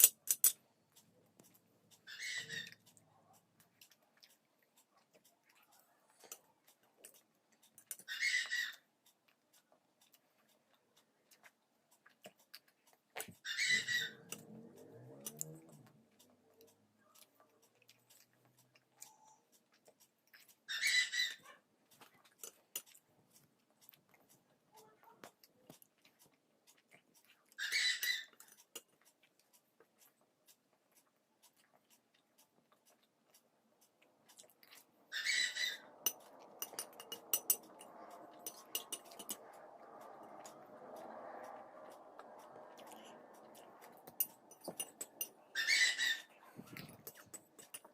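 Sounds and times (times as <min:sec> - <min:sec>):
spoon scraping and clinking plate: 0:00.0 - 0:00.6, 0:36.0 - 0:39.4, 0:43.9 - 0:45.9, 0:46.8 - 0:47.9
close-miked chewing: 0:00.6 - 0:47.9.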